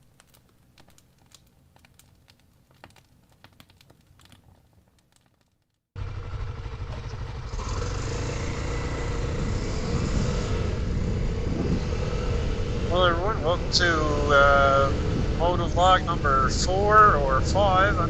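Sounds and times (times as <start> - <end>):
dirt bike engine running: 6.0 - 15.6.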